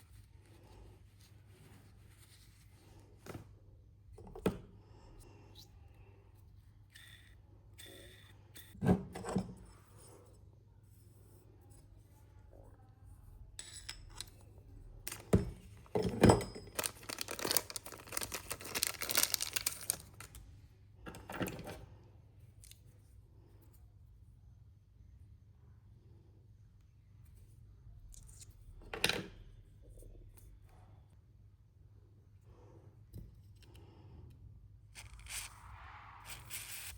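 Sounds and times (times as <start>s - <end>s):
crackly rustling or scraping: 16.6s - 20.4s.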